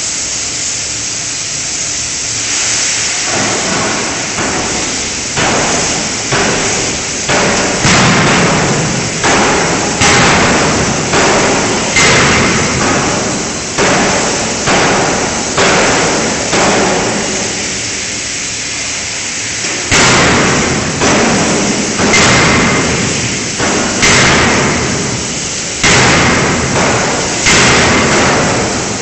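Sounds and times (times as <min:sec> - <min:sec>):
forging hammer blows ringing: 0:03.4 - 0:17.4.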